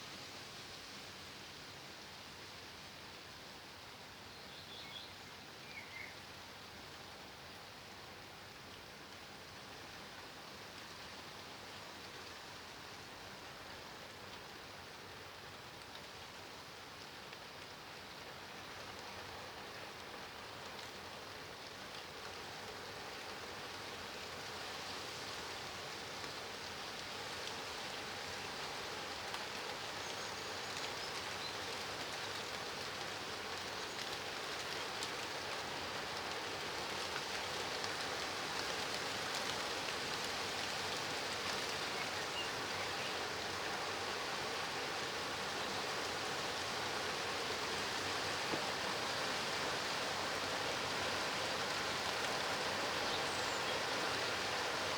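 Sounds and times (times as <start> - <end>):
steady rain falling: 0.0 - 54.9
faint raindrop ticks: 8.6 - 10.1, 13.5 - 24.6, 25.3 - 43.8, 51.6 - 54.5.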